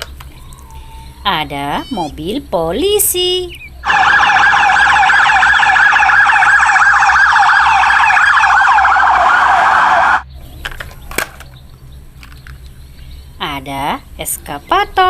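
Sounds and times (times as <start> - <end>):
toy electronic siren wailing: 0.4 - 2.2, 3.8 - 10.2.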